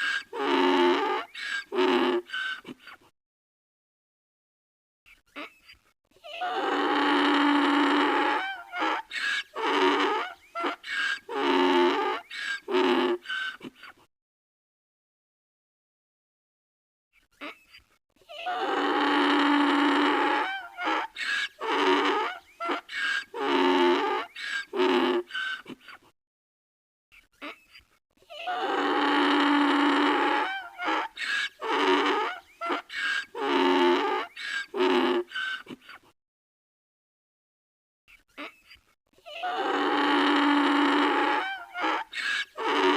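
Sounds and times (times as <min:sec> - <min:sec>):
donkey braying: 0:00.0 - 0:02.8, 0:06.2 - 0:13.7, 0:18.3 - 0:25.8, 0:28.3 - 0:35.8, 0:39.2 - 0:42.9.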